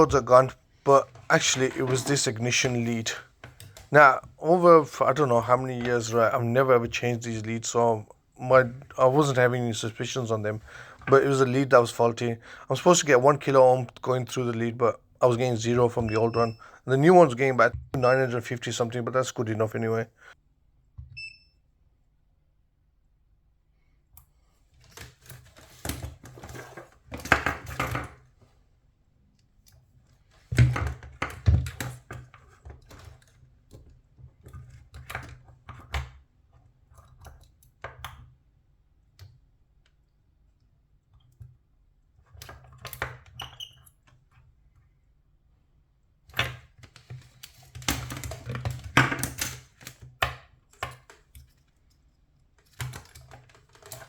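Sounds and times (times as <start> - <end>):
small parts and tools clattering: 50.7 - 54.0.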